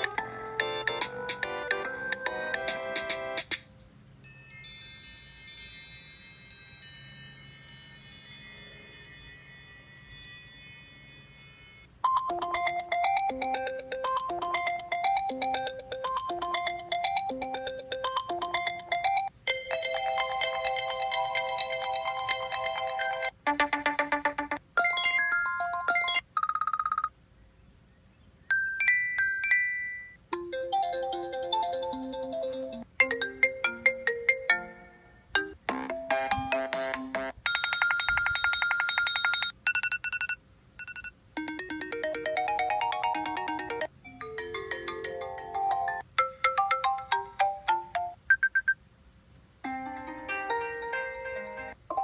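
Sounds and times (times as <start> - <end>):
short electronic ringtone melodies: 0.0 - 3.5, 11.2 - 27.1.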